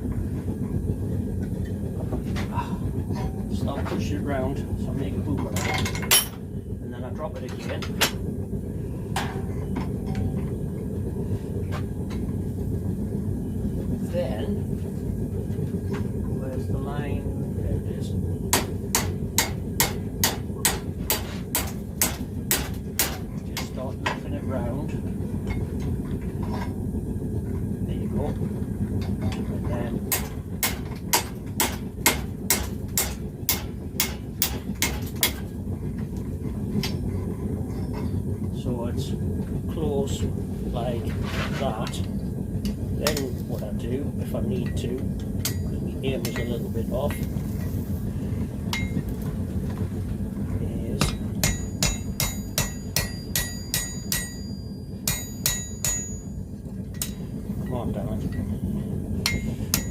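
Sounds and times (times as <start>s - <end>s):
forge rumbling: 0.0s - 59.9s
hammer on iron chain: 51.0s - 56.3s.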